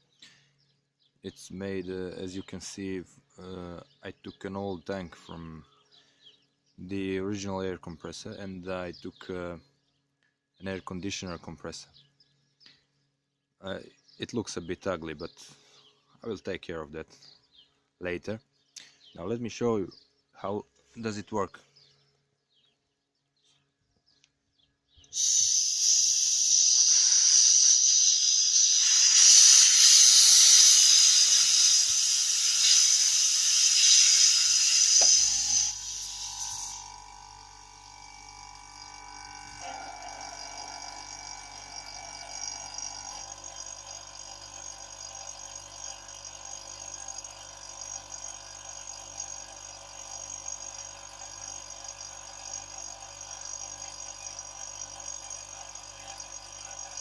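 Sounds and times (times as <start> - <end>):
compressed air hissing: 25.1 - 43.9
compressor humming: 25.2 - 57.0.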